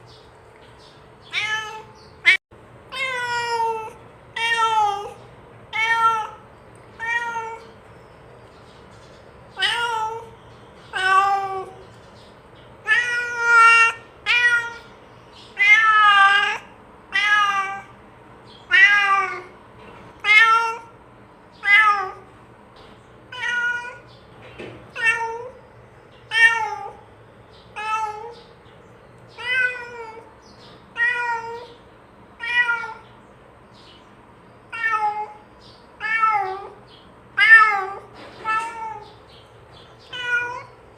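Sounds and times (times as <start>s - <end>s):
cat meowing: 1.2s - 6.4s, 7.0s - 7.8s, 9.6s - 11.8s, 12.8s - 18.0s, 18.6s - 19.6s, 20.2s - 21.0s, 21.6s - 22.3s, 23.3s - 24.1s, 24.9s - 25.6s, 26.3s - 27.0s, 27.7s - 28.5s, 29.3s - 30.3s, 30.9s - 31.8s, 32.4s - 33.0s, 34.7s - 35.4s, 36.0s - 36.8s, 37.4s - 39.3s, 40.0s - 40.8s.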